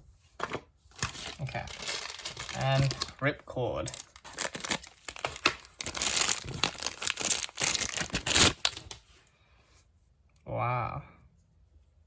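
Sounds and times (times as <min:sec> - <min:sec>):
plastic packaging crinkling and tearing: 0:00.9 - 0:09.1.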